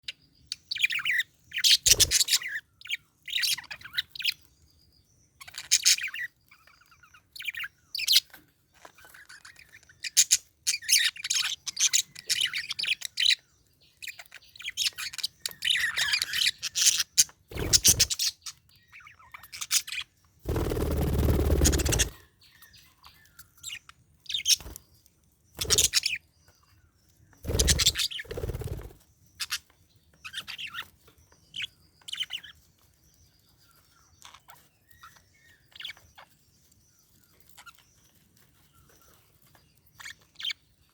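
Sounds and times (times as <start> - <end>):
budgerigar chattering and chirping: 0.8 - 2.6, 25.6 - 26.2, 27.6 - 28.3.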